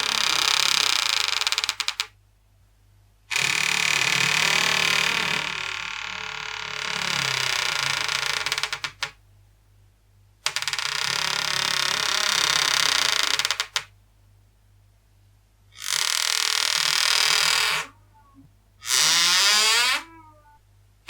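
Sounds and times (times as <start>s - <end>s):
door hinges creaking: 3.4s - 9.1s, 15.8s - 20.6s.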